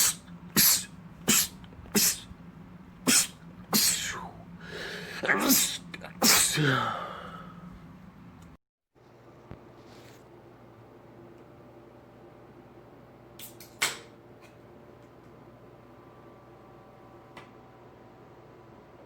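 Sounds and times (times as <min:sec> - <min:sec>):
man sneezing: 0:00.0 - 0:02.3, 0:03.0 - 0:04.4, 0:05.1 - 0:07.4.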